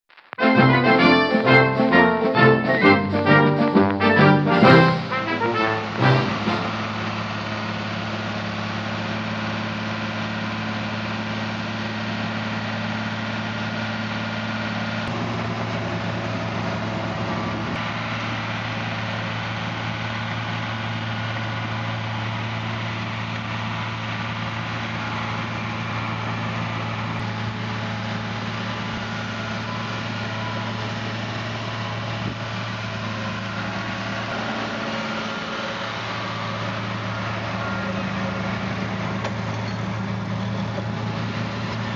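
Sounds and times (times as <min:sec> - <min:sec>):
baler machinery working: 0:00.4 - 0:08.1
tractor diesel engine under load: 0:00.6 - 0:41.9.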